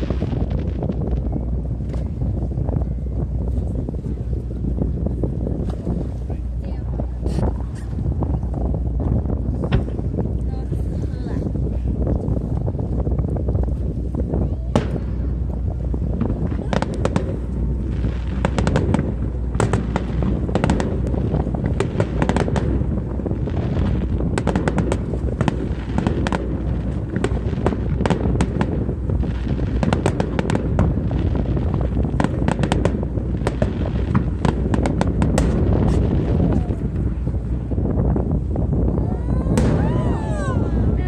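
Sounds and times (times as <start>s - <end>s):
fireworks cracking and popping: 0.0s - 2.2s, 14.8s - 38.1s
low rumble: 0.0s - 41.0s.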